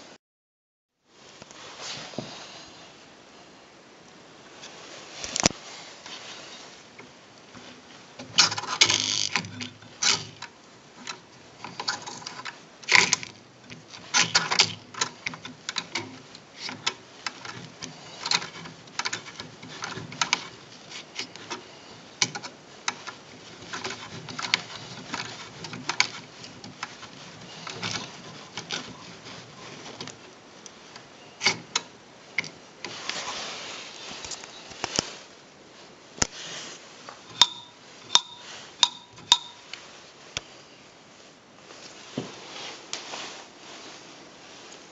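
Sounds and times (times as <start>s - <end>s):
manual typewriter clacking: 8.3s - 30.2s.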